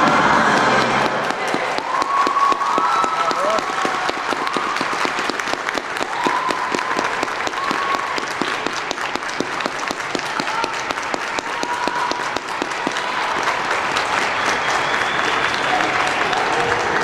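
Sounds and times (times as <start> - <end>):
audience applauding: 0.0 - 17.0
high calls or whistles: 14.2 - 15.7.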